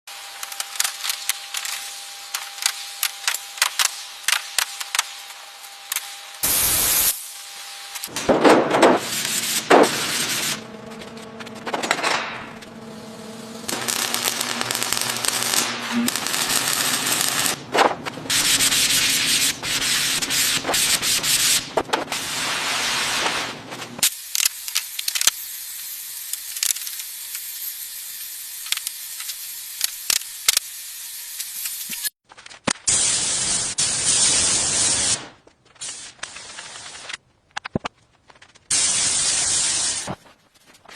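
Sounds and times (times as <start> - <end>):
machine hum: 8.0 - 19.6
sanding on metal: 18.3 - 21.6.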